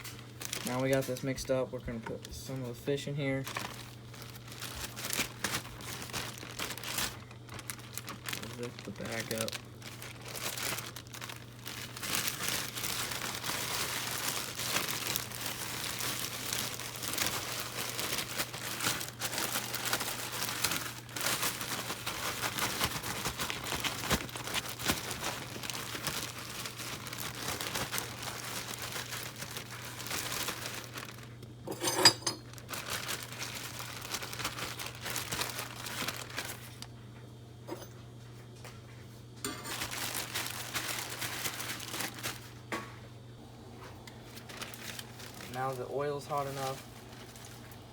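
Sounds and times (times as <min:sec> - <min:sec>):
plastic bag crinkling: 0:00.0 - 0:37.0, 0:39.4 - 0:42.7, 0:43.7 - 0:47.9
steady low hum: 0:00.0 - 0:47.9.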